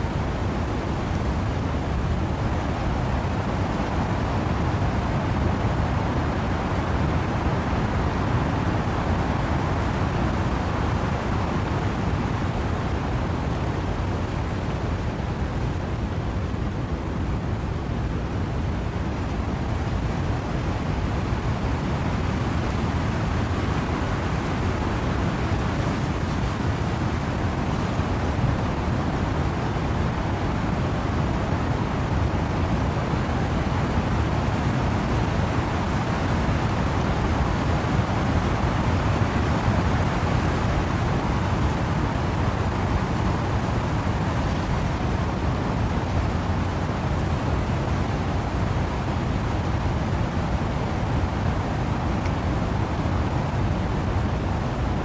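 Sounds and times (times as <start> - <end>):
wind and rain in trees: 0.0 - 55.0.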